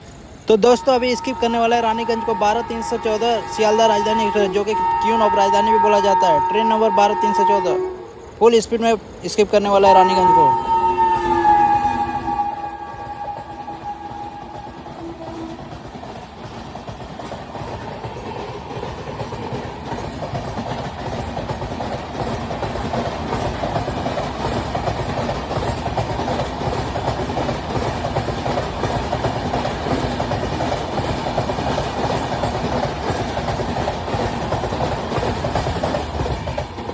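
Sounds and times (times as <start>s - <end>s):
train coaches rushing past: 0.0s - 36.9s
wheels clacking over rail joints: 11.8s - 36.9s.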